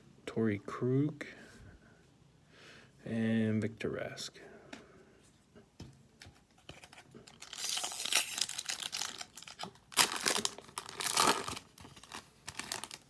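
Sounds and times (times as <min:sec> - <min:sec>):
foil wrapper tearing and crinkling: 0:07.3 - 0:13.0.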